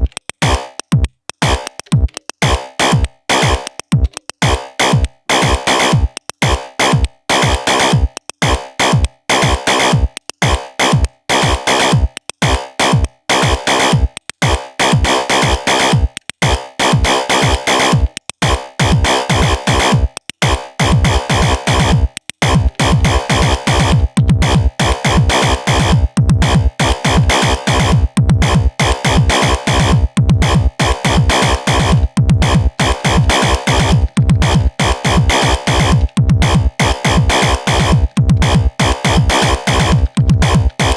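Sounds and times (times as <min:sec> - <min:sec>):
deep kick drum: 0:00.0 - 0:40.9
electronic drum sounds: 0:00.0 - 0:40.9
synth tones: 0:20.8 - 0:40.9.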